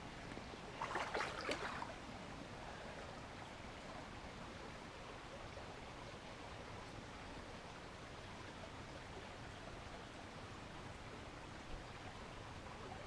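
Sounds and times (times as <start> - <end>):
stream flowing over rocks: 0.1 - 13.0
splashing or knocking: 0.8 - 1.8.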